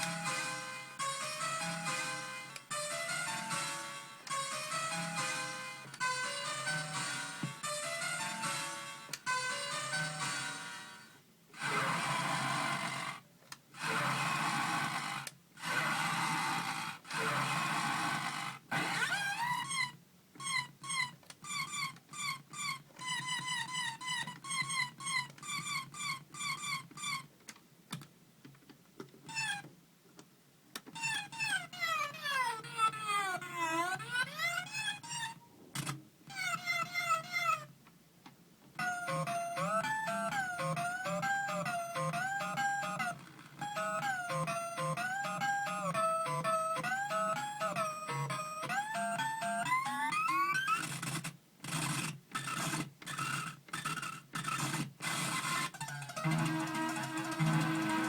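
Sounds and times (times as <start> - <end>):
toy beeping electronic notes: 38.8 - 51.0, 52.4 - 58.0.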